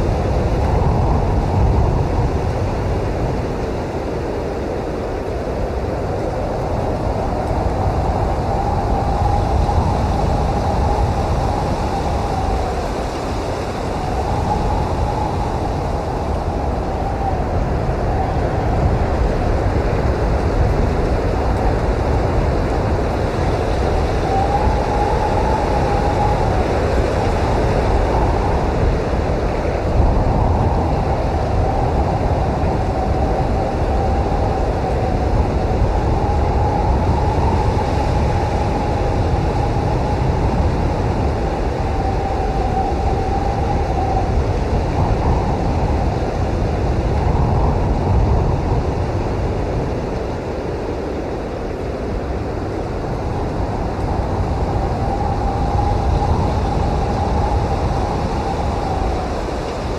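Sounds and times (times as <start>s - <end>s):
blizzard wind blowing hard: 0.0s - 59.9s.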